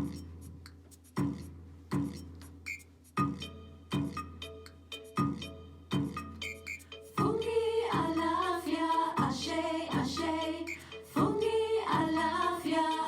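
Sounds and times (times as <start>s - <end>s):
woman singing: 7.2s - 13.0s.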